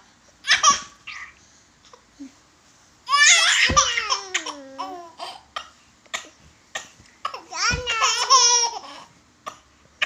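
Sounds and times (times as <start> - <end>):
baby laughing: 0.4 - 1.4, 7.4 - 9.1.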